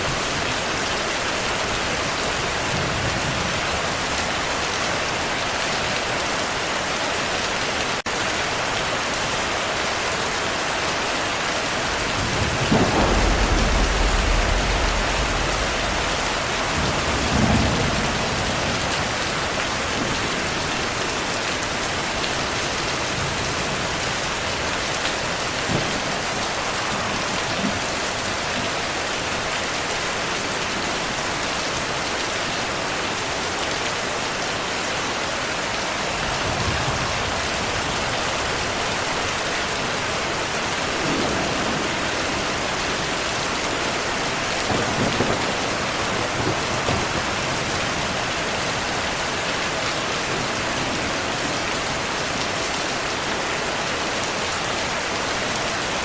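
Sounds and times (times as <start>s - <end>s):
heavy rain: 0.0s - 56.0s
thunder rumbling: 11.4s - 28.8s, 35.8s - 49.1s.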